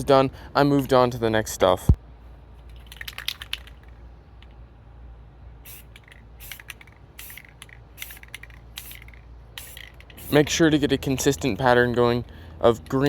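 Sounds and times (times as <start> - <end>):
spray paint can hissing: 5.6 - 10.6.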